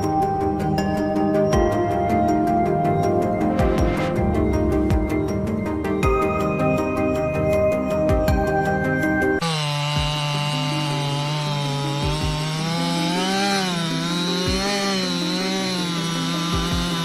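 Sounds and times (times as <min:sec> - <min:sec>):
chainsaw cutting wood: 0:09.4 - 0:17.0.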